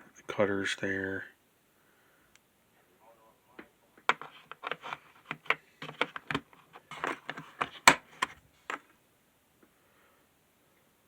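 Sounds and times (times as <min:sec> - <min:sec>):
plastic and metal tool parts handled: 0:04.1 - 0:08.9.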